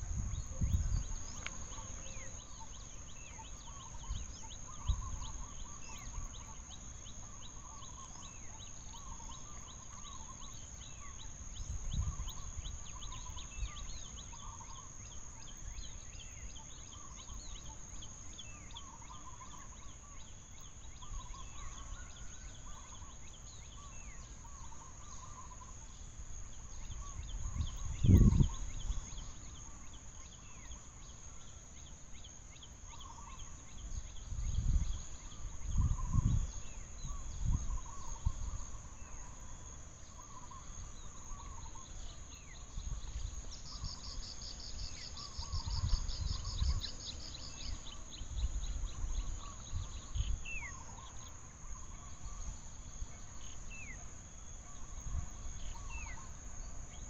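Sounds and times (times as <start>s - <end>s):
birds chirping: 0.0s - 57.0s
insect drone: 0.0s - 57.0s.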